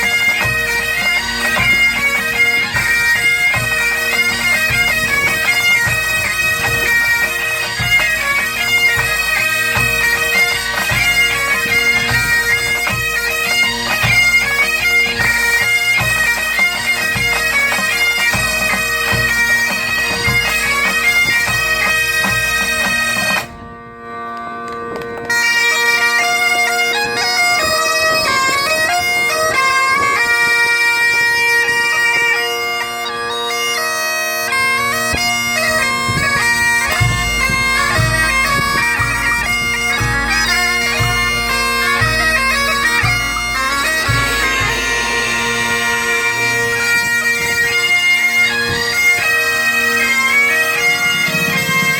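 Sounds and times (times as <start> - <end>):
bagpipes with drones: 0.0 - 51.9
drum beats: 35.1 - 49.2.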